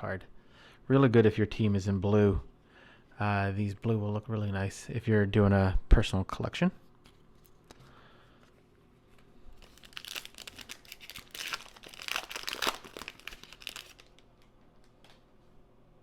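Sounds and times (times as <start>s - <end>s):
foil wrapper crinkling and tearing: 9.2s - 14.9s.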